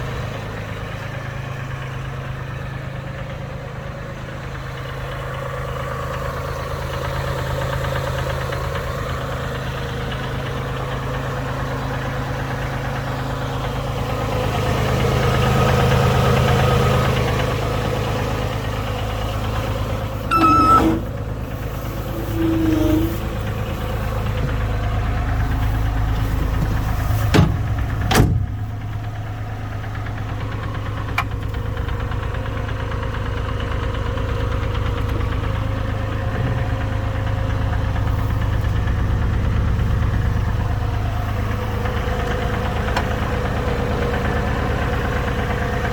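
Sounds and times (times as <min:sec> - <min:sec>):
diesel engine running: 0:00.0 - 0:45.9
short pitched sounds: 0:20.3 - 0:21.2.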